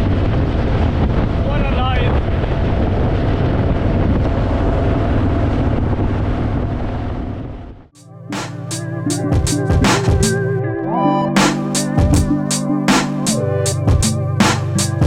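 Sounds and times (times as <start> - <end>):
music: 8.0 - 15.0.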